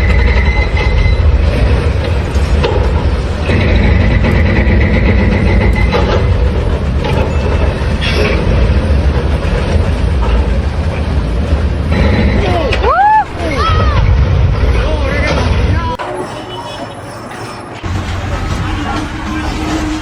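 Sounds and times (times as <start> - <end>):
short clanks: 0.0 - 16.0
heavy machinery rumbling: 0.0 - 20.0.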